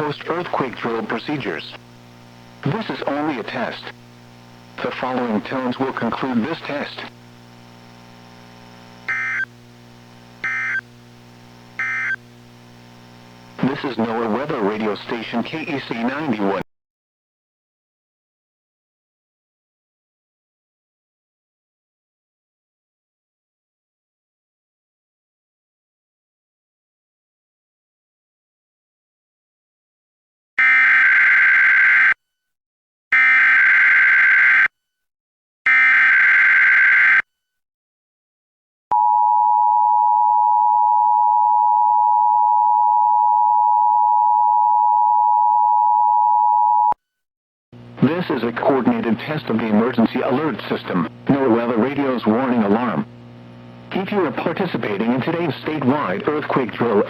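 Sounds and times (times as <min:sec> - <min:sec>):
steady low hum: 0:00.0 - 0:16.6, 0:47.8 - 0:57.0
buzzy digital data bursts: 0:00.2 - 0:16.4.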